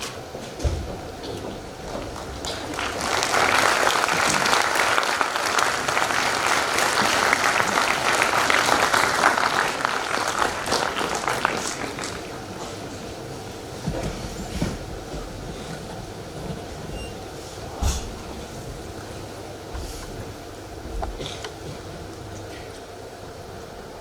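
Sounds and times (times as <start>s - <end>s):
audience applauding: 1.8s - 13.3s.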